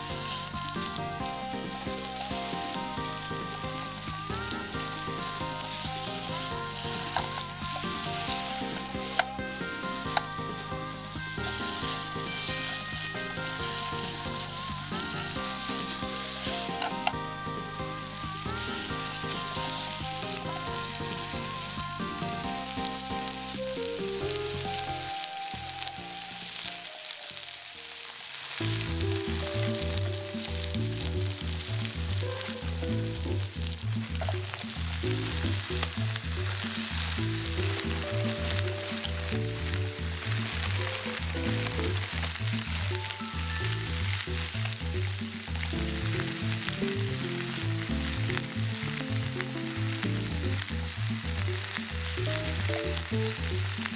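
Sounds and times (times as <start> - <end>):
background music: 0.0 - 53.9
food sizzling in oil: 0.0 - 53.9.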